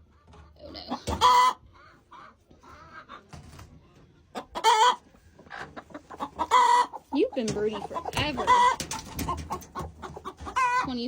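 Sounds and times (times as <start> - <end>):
hens clucking: 0.0 - 11.0
hen squawking: 5.8 - 8.8, 9.5 - 11.0.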